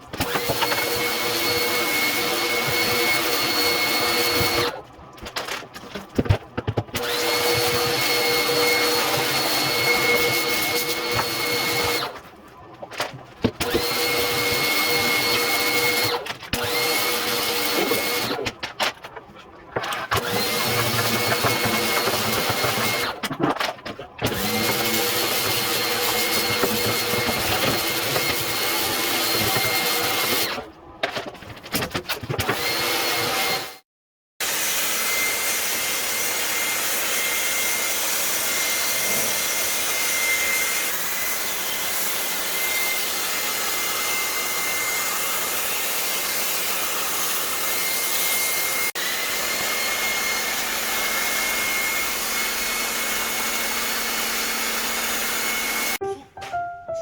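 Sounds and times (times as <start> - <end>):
pressure washer motor whine: 7.0 - 12.2.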